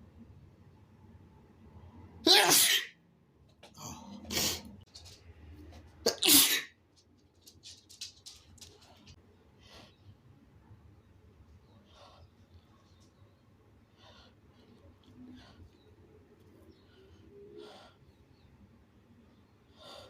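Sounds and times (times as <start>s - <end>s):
person sneezing: 2.3s - 2.9s, 6.1s - 6.7s.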